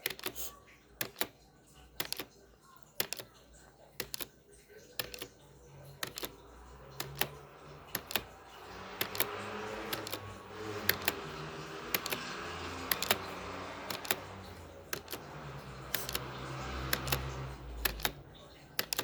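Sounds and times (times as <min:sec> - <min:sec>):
timer ticking clicks: 0:01.0 - 0:01.4, 0:02.0 - 0:03.3, 0:04.0 - 0:04.3, 0:04.9 - 0:05.4, 0:06.0 - 0:19.0.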